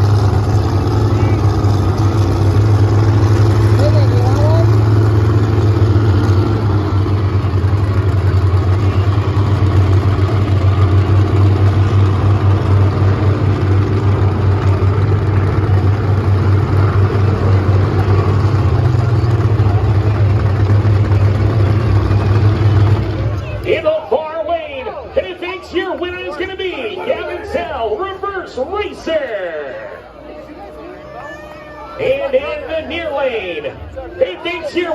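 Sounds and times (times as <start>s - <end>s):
truck engine droning: 0.0s - 34.9s.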